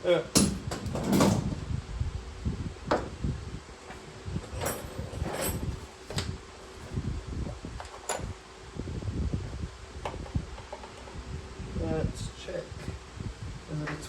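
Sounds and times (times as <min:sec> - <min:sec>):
rumbly handling noise: 0:00.3 - 0:14.0.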